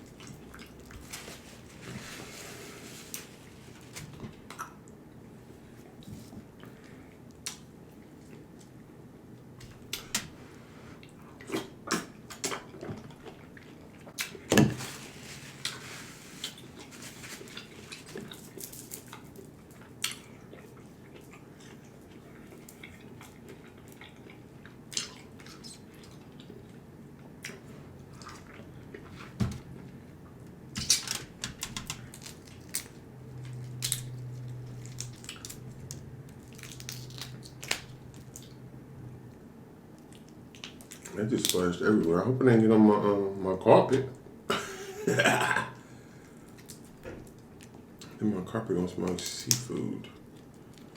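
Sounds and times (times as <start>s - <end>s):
low steady hum: 0.0s - 50.9s
wet chewing: 16.4s - 26.8s.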